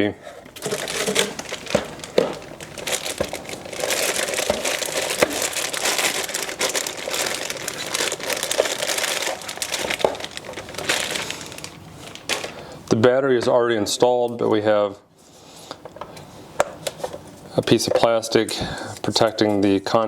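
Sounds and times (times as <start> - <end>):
plastic packaging crinkling: 0.4 - 12.8.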